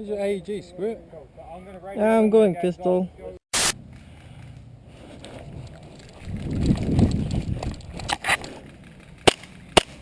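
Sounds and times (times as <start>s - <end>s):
airsoft gun shots: 3.5s - 3.8s.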